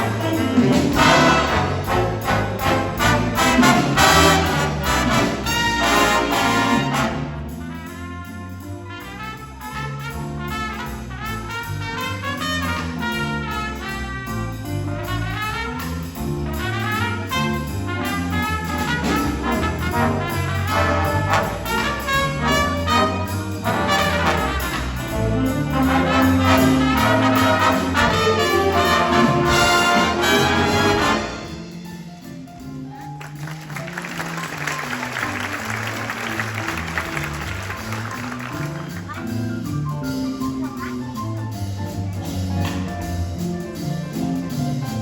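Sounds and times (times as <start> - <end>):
trumpets and trombones: 0.0 - 31.8
bass line: 0.0 - 45.0
jazz big band playing: 0.0 - 45.0
applause: 33.2 - 39.3.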